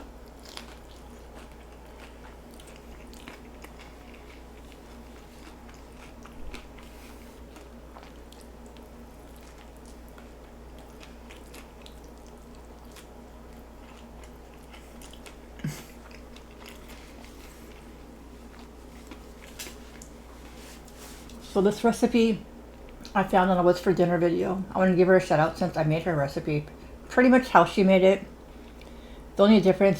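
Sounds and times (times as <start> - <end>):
crunchy chewing: 0.0 - 21.4
steady low hum: 0.0 - 29.9.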